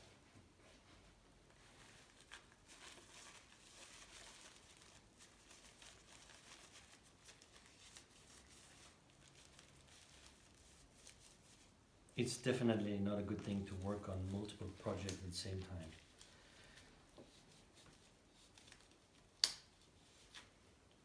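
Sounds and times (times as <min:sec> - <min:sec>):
faint rustling: 0:00.0 - 0:19.1.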